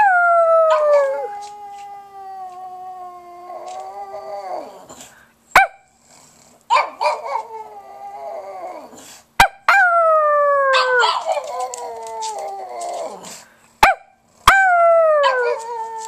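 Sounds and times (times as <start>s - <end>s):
dog howling: 0.0s - 4.9s, 9.7s - 13.3s, 14.5s - 16.0s
dog yipping: 10.7s - 12.9s.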